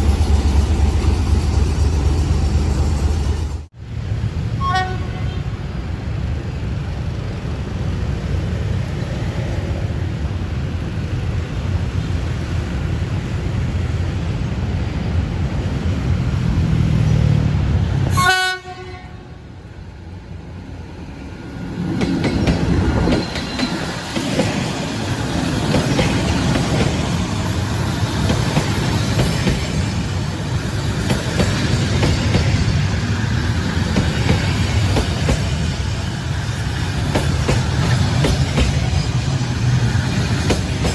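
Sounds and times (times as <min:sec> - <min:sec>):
locomotive engine rumble: 0:00.0 - 0:03.7
train wheels clacking on rails: 0:00.0 - 0:03.7, 0:21.7 - 0:40.9
train horn toot: 0:04.6 - 0:05.7, 0:18.1 - 0:19.4.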